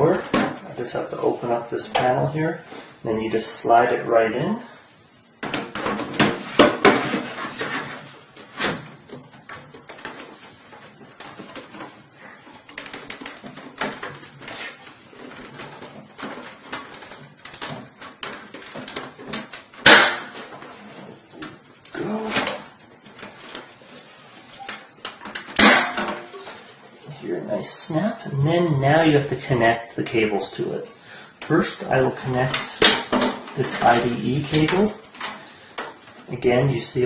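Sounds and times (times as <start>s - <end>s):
loud sharp knock: 19.8s - 20.4s.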